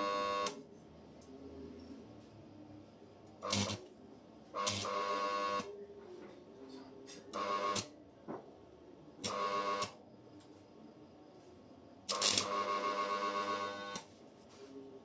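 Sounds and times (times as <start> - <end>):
arc welding crackle: 3.4 - 3.8, 4.6 - 5.7, 12.1 - 14.1
welder hum: 3.4 - 3.8, 4.6 - 5.7, 12.1 - 14.1.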